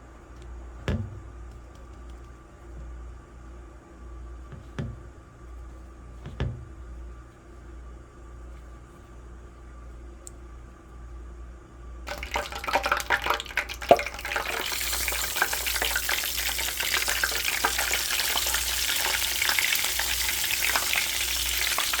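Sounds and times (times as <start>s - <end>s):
frying sizzle: 12.1s - 22.0s
oil crackling pops: 12.1s - 22.0s.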